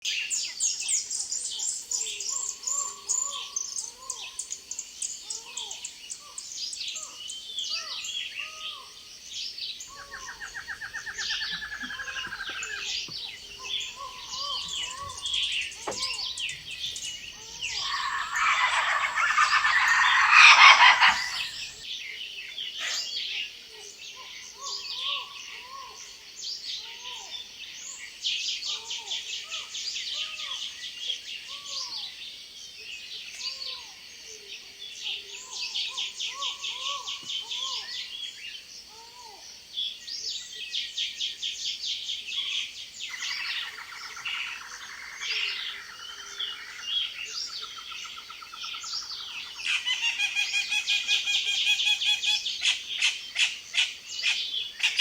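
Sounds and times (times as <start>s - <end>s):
whistled bird notes: 9.9s - 21.8s
buzzy bird trills: 10.0s - 21.8s
fast-pulsing bird trill: 10.0s - 21.8s.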